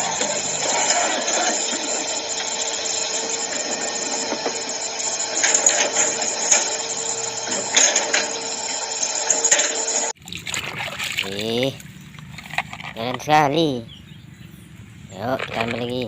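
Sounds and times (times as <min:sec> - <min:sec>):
motor-like hum: 0:00.0 - 0:16.0
knocks and splashes: 0:10.2 - 0:13.0, 0:15.3 - 0:16.0.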